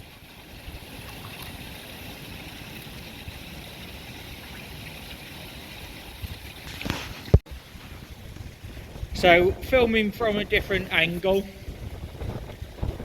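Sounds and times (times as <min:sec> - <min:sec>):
running water rushing: 0:00.0 - 0:13.0
wind buffeting microphone: 0:06.1 - 0:13.0.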